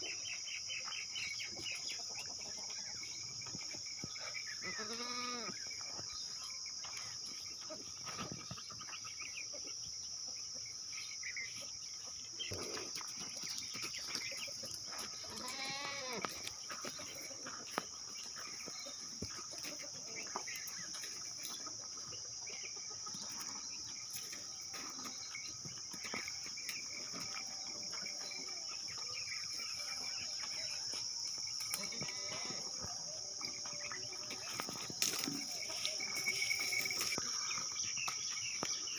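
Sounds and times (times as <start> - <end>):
goats bleating: 4.6 - 5.6, 15.3 - 16.3
high-pitched insect drone: 24.1 - 38.9.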